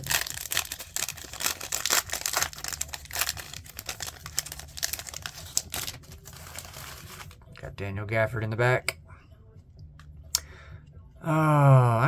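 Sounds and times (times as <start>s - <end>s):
pack crinkling: 0.0s - 7.4s.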